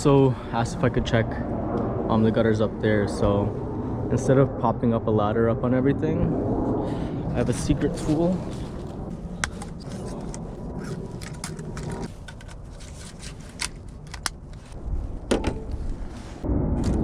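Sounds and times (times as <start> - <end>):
louder low sound: 0.0 - 12.1, 14.8 - 17.0
low steady rumble: 0.0 - 17.0
drone handling clicks and scrapes: 7.8 - 16.2.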